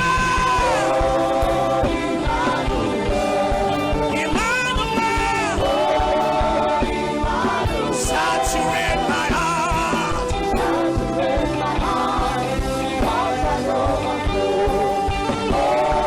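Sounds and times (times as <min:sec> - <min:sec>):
person singing: 0:00.0 - 0:01.7, 0:08.0 - 0:10.9
steady drum beat: 0:00.0 - 0:16.0.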